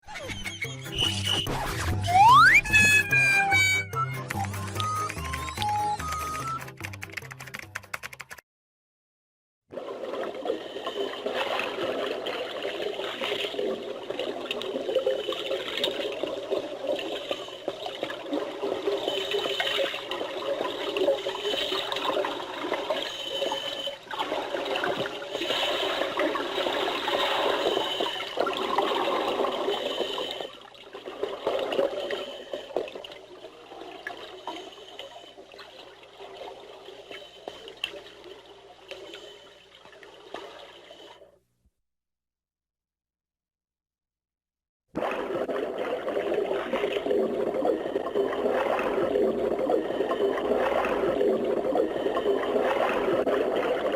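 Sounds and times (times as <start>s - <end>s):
underwater bubbling: 9.7s - 41.4s, 45.0s - 53.9s.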